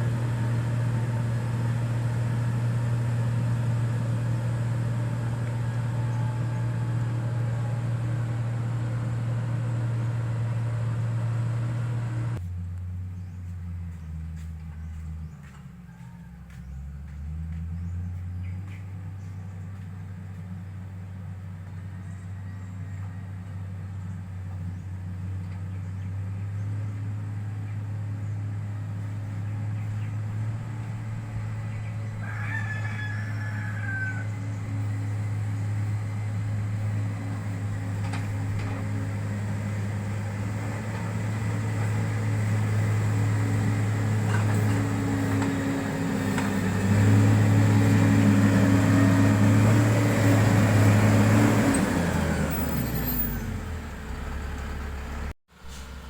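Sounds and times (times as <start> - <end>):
diesel engine running: 0.0 - 56.0
rooster crowing: 15.7 - 17.1, 32.1 - 34.8.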